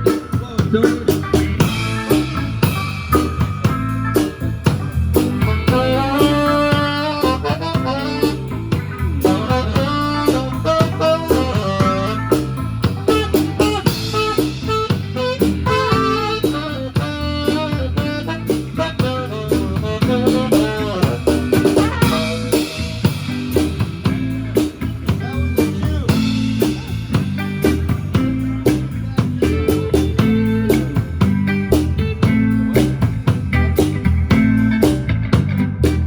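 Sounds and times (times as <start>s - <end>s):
drum kit rimshots: 0.0s - 36.0s
live band playing: 0.0s - 36.0s
saxophone: 5.2s - 23.2s.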